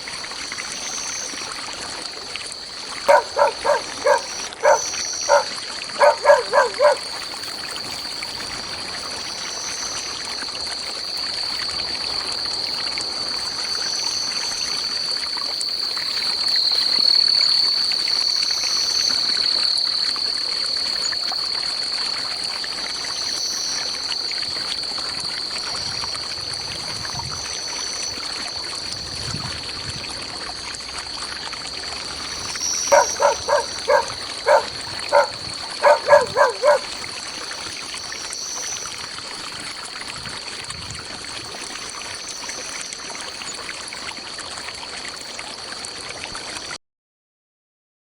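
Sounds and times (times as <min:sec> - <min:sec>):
stream flowing: 0:00.0 - 0:16.5, 0:24.1 - 0:46.7
animal giving short sharp calls: 0:03.1 - 0:07.1, 0:32.9 - 0:36.9.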